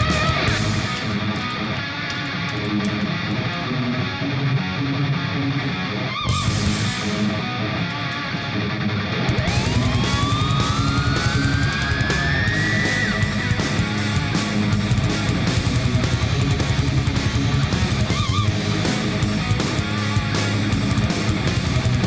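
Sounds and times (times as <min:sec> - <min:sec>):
electric guitar music: 0:00.0 - 0:22.0
rising whine: 0:09.2 - 0:19.6.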